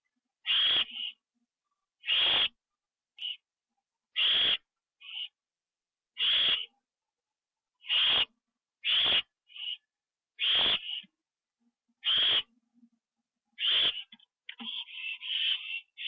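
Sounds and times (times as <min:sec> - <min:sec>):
owl hissing screeches: 0:00.4 - 0:01.2, 0:02.0 - 0:02.6, 0:03.2 - 0:03.4, 0:04.1 - 0:05.4, 0:06.2 - 0:06.8, 0:07.8 - 0:11.1, 0:12.0 - 0:12.5, 0:13.6 - 0:16.0.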